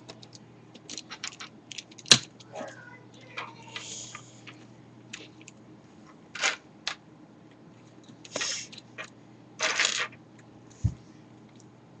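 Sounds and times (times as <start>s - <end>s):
plastic clattering rattles: 0.0s - 2.3s, 9.0s - 10.2s.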